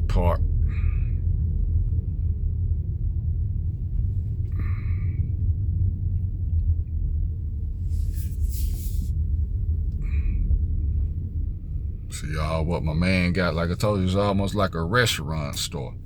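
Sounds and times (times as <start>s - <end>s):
car engine and road noise: 0.0s - 16.0s
brief hiss: 8.0s - 9.1s.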